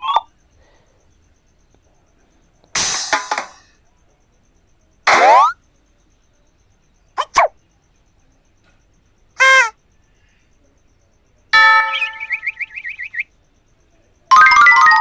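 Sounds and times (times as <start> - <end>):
cartoon honk-like tone: 5.1 - 5.6, 9.4 - 9.8
cartoon squeaky pitch glides: 5.1 - 5.6, 7.2 - 7.5, 9.4 - 9.8
warbling cartoon tone: 5.1 - 5.6, 7.2 - 7.5.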